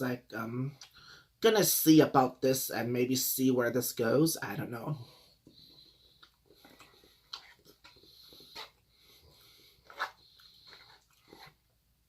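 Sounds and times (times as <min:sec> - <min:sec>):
wet chewing and lip-smacking: 0:05.4 - 0:11.6.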